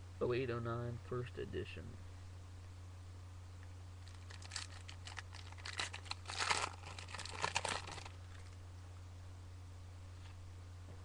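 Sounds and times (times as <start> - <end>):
plastic wrapper crinkling: 4.0 - 8.6.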